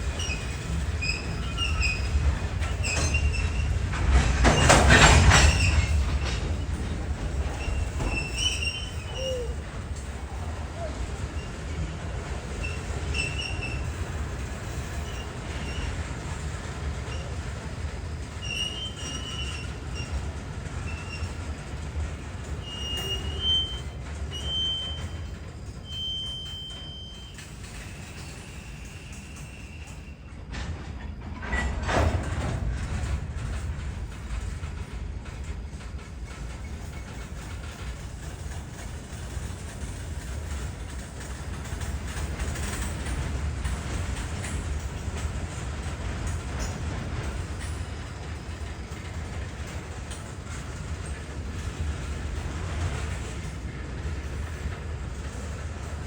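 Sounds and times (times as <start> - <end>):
train rumbling on rails: 0.0 - 56.0
high-pitched wheel squeals: 7.6 - 9.6, 22.6 - 30.1.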